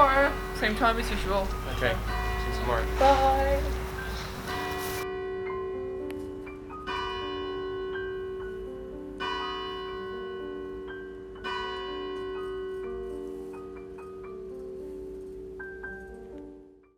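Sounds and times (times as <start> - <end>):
church bell tolling: 0.0 - 8.6, 9.2 - 12.8
soft musical notes: 0.0 - 16.7.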